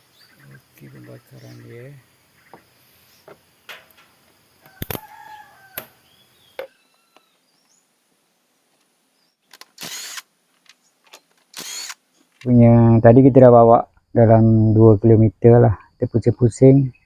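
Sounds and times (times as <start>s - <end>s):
bird chirps: 0.0s - 3.8s, 5.1s - 7.9s, 15.8s - 17.0s
short hissing bursts: 2.7s - 3.3s, 9.8s - 10.3s
faint rooster crow: 4.6s - 7.4s.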